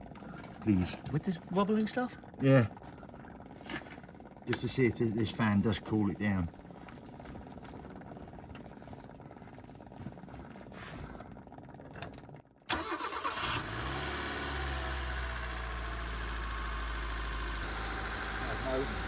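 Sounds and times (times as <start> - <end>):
car engine starting and idling: 12.7 - 19.0.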